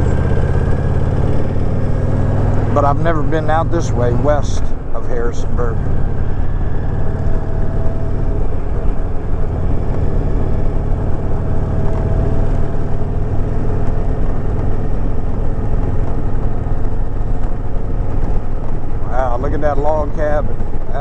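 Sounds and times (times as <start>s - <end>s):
motorcycle engine cruising: 0.0s - 21.0s
wind noise: 3.8s - 21.0s.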